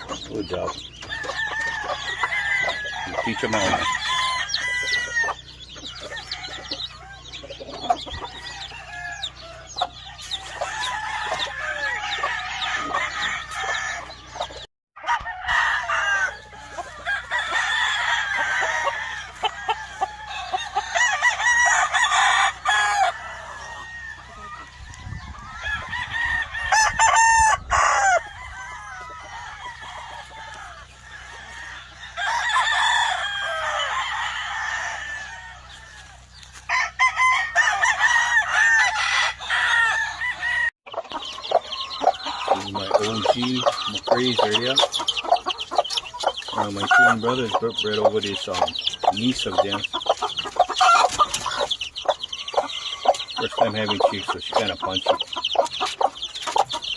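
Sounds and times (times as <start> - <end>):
chicks peeping: 0.0 - 56.9
hens clucking: 0.0 - 56.9
roosters crowing: 0.0 - 56.9.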